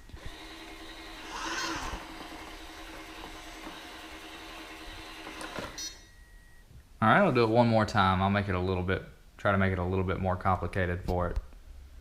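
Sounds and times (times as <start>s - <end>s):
robot vacuum motor hum: 0.1s - 5.5s.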